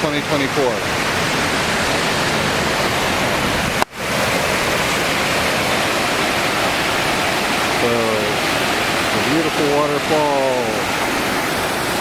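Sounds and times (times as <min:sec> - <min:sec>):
waterfall roaring: 0:00.0 - 0:12.0.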